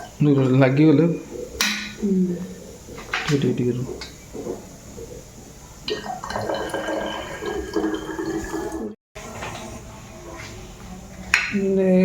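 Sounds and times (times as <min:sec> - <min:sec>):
liquid pouring into bottle: 0:03.7 - 0:08.9.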